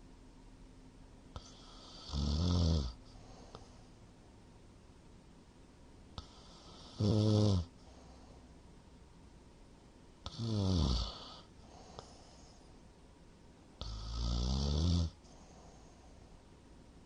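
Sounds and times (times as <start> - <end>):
man snoring loudly: 1.4 - 3.0, 6.2 - 7.7, 10.3 - 11.5, 13.8 - 15.2.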